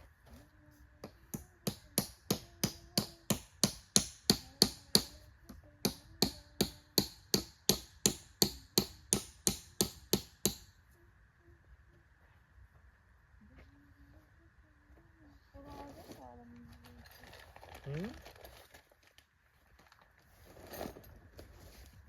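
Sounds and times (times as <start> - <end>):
hammer blows on tent pegs: 1.3 - 5.2.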